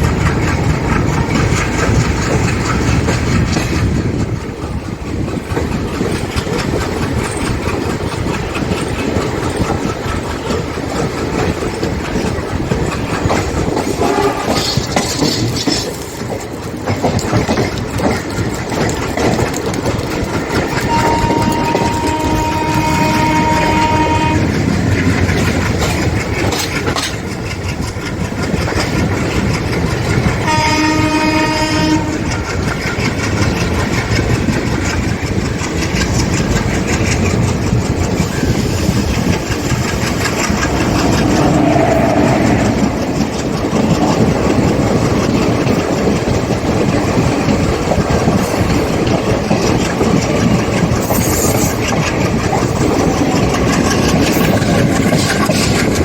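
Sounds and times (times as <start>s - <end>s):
train running on track: 0.0s - 56.0s
diesel locomotive horn: 14.0s - 14.6s, 20.8s - 24.7s, 30.4s - 32.4s.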